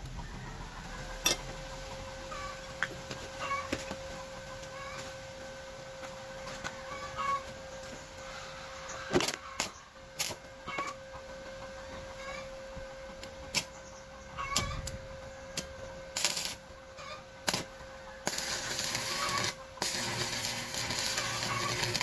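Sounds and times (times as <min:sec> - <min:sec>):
steady hum: 0:00.0 - 0:22.0
welding arc crackling hiss: 0:02.6 - 0:05.4, 0:09.1 - 0:10.9, 0:15.6 - 0:16.8, 0:17.4 - 0:22.0.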